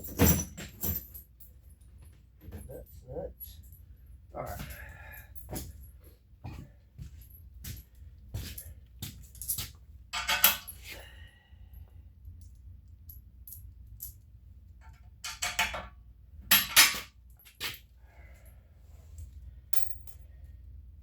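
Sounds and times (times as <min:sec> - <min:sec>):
steel nuts and bolts clinking: 0:09.4 - 0:10.9, 0:14.8 - 0:17.9, 0:19.8 - 0:20.3.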